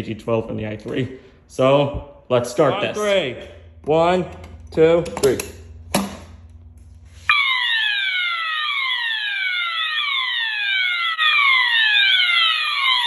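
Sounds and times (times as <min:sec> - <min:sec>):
alarm siren tone: 0:06.5 - 0:13.0
fire alarm horn sweeping tone: 0:06.9 - 0:13.0.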